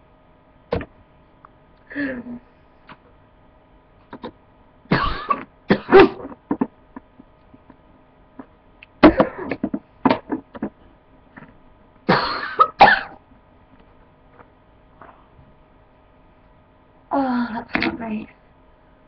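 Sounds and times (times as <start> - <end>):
person coughing hard: 4.9 - 6.7, 9.0 - 9.7, 12.1 - 13.2.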